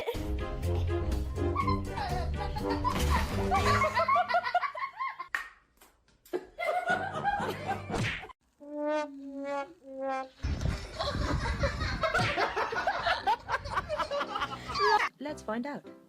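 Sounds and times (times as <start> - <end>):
music: 0.0 - 4.2, 13.6 - 16.0.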